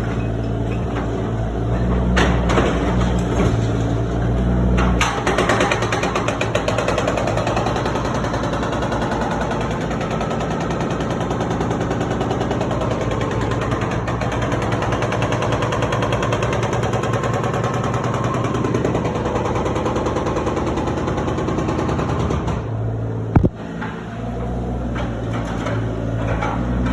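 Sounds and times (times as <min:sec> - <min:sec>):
hydraulic breaker hammering concrete: 0:04.8 - 0:22.8.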